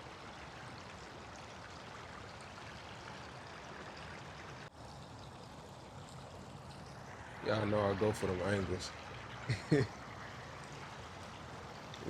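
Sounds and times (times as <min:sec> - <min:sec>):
stream water rushing: 0:00.0 - 0:12.0.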